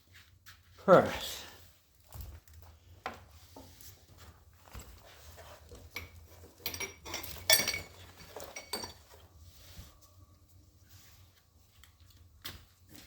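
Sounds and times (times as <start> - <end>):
steel tools clinking and clanking: 5.6 - 9.4.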